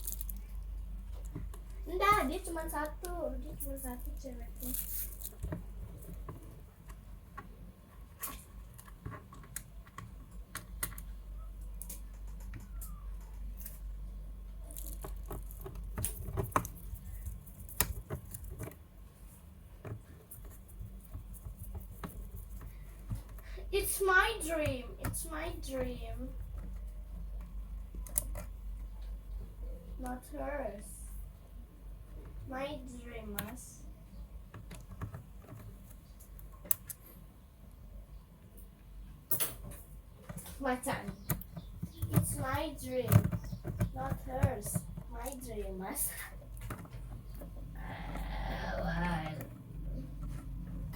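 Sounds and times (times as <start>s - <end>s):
steady low hum: 0.0s - 50.9s
hard objects clicking and tapping: 14.7s - 18.8s, 39.3s - 45.4s, 46.3s - 48.2s.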